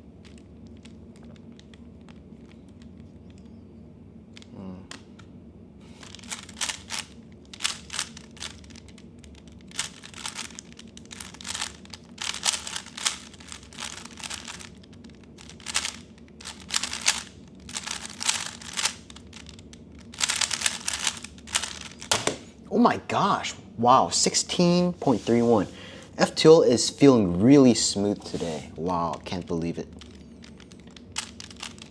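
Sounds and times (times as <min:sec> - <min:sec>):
plastic cube clicking: 0:06.0 - 0:22.4, 0:29.9 - 0:31.9.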